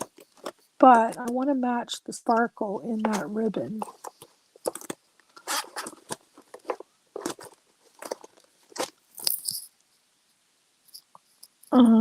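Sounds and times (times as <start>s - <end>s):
plastic packets crinkling: 3.8s - 9.7s.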